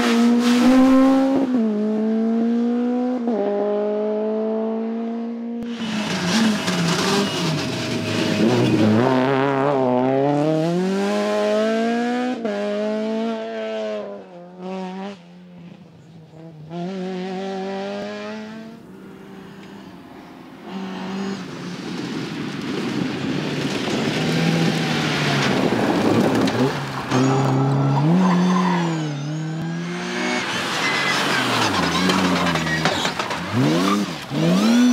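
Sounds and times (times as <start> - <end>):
rally car engine revving: 0.0 - 15.8, 16.4 - 19.8, 20.6 - 34.9
tyre squeal: 26.5 - 34.9.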